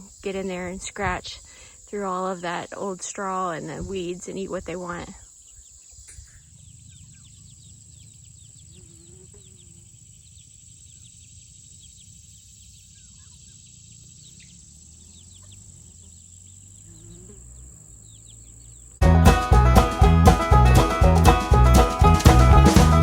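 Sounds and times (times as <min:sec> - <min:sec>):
insect chirps: 0:00.0 - 0:19.0
insects droning: 0:00.0 - 0:19.0
banjo music: 0:19.0 - 0:23.0.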